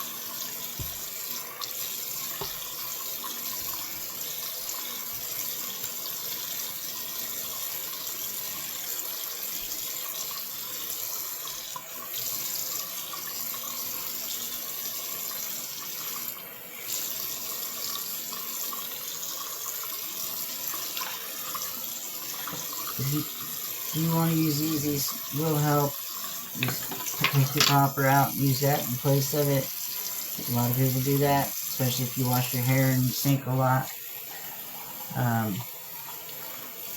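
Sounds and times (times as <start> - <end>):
tap running into sink: 0.7 - 1.1, 2.3 - 2.8, 22.3 - 23.7, 26.5 - 28.2.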